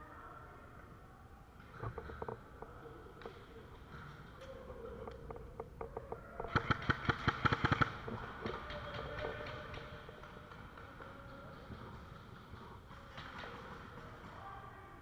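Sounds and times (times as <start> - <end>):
airsoft gun rapid fire: 6.5 - 10.7.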